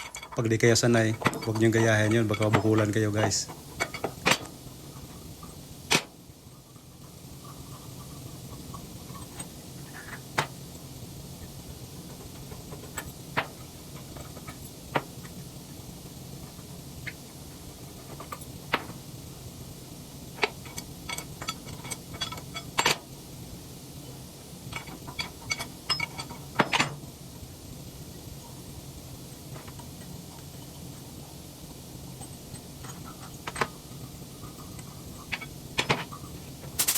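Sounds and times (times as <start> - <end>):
steady low hum: 0.0 - 36.9
metal tools clinking and knocking: 20.4 - 23.0, 24.7 - 27.0, 32.1 - 36.9.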